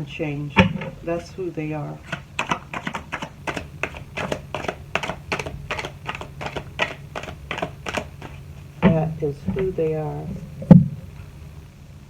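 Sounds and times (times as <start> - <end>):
rapid clicking taps: 2.0 - 11.6.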